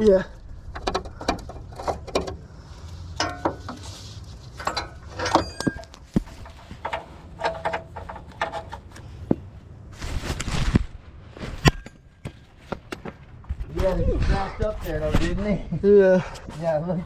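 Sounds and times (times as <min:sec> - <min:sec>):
rubbing sounds: 0:02.7 - 0:05.1
short metallic ring: 0:04.7 - 0:05.9.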